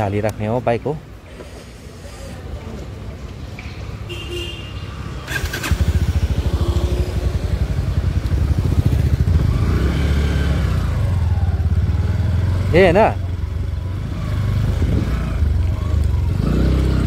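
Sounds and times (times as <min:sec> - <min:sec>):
motorcycle engine starting and running: 0:04.5 - 0:17.0.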